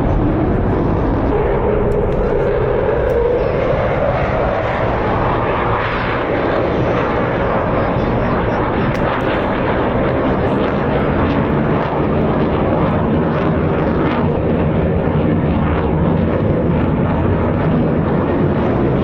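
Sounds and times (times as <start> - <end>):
military aircraft engines: 0.0 - 19.0.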